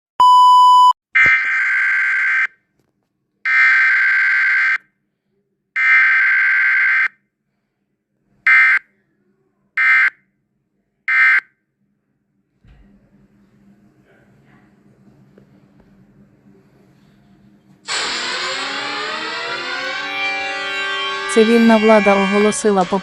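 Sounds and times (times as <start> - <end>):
short steady beep: 0.2 - 1.0
loud buzzing alarm tones: 17.9 - 23.0.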